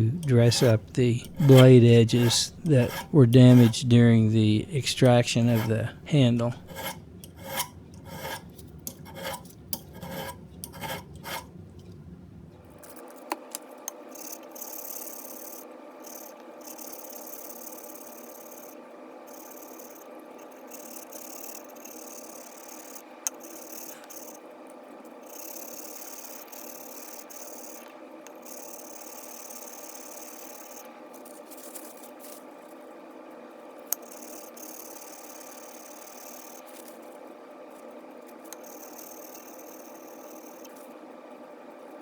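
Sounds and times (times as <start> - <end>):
file rasping on steel: 0.0 - 4.0, 4.8 - 5.9, 6.5 - 11.5, 14.1 - 24.4, 25.2 - 30.9, 33.9 - 36.7, 38.5 - 40.7
faint steady scraping: 0.0 - 11.5, 14.1 - 24.4, 25.0 - 41.0.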